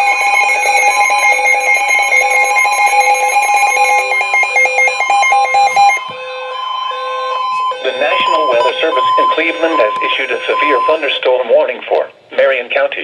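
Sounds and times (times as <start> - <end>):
weather radios beeping: 0.0 - 13.0
steady alert tone: 7.0 - 11.4.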